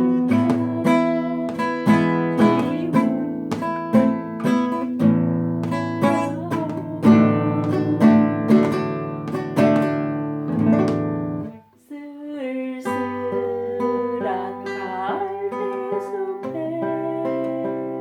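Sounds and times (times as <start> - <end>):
acoustic guitar chords: 0.0 - 11.8, 12.7 - 18.0.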